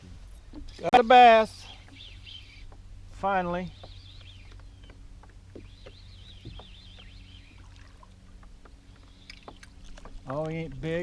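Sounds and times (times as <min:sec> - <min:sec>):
faint water splashing: 0:00.2 - 0:11.0
bird warbling: 0:01.6 - 0:02.8.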